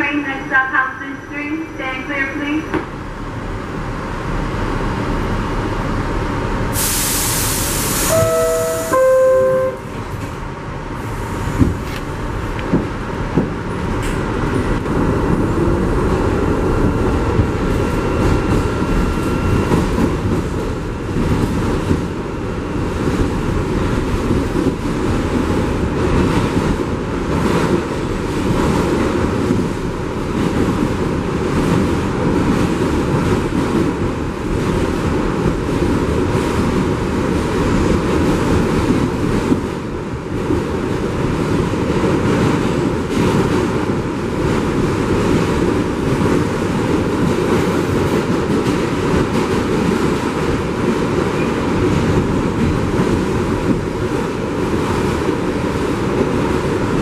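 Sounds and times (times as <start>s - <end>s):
train rumbling: 0.0s - 57.0s
hiss of air: 6.7s - 8.2s
descending two-tone door chime: 8.1s - 9.9s.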